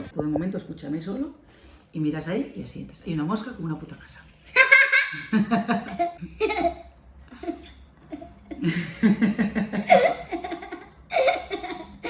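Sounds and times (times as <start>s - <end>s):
people laughing: 4.6s - 6.8s, 7.4s - 12.0s.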